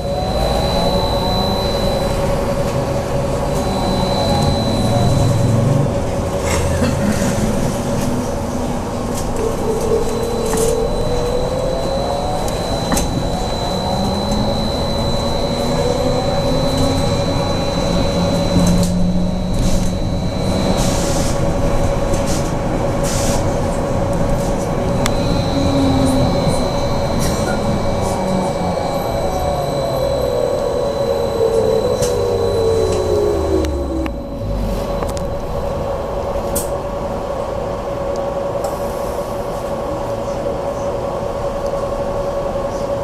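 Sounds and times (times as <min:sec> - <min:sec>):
electric motor whine: 0:00.0 - 0:06.1, 0:09.2 - 0:22.3, 0:24.1 - 0:35.9.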